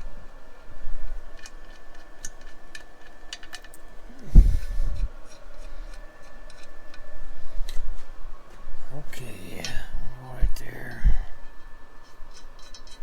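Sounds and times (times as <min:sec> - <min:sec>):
hand tools clicking and tapping: 0:01.3 - 0:07.9, 0:10.7 - 0:13.0.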